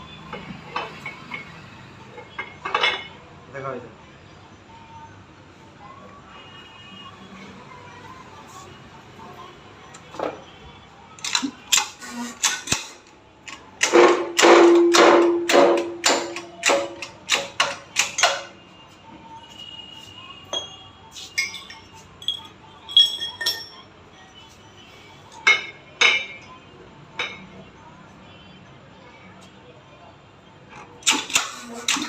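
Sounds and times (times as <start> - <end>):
hammer striking metal: 13.8 - 18.6
metal tools clinking: 21.4 - 23.8.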